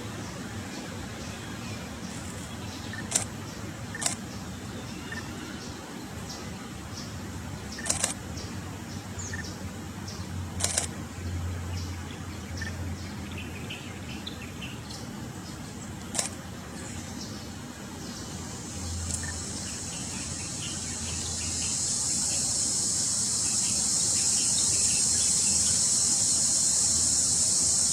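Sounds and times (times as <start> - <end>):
outdoor background noise: 0.0 - 27.9
sharp clicks: 2.9 - 4.2, 7.8 - 8.2, 10.6 - 11.0, 16.0 - 16.4
bird chirps: 9.2 - 9.6
high insect buzz: 18.1 - 27.9.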